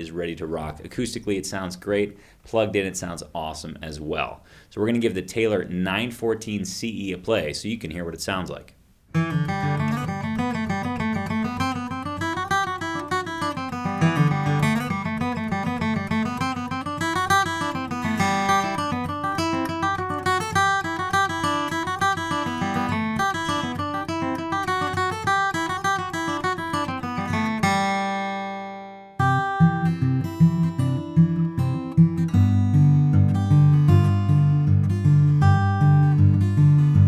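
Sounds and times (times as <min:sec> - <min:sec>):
acoustic guitar picking and chords: 0:09.1 - 0:37.0.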